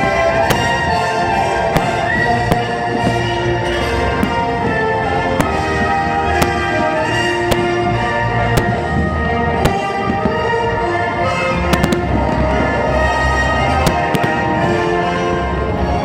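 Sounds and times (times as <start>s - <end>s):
fireworks bangs: 0.0s - 15.0s
loud music with sustained notes: 0.0s - 16.0s.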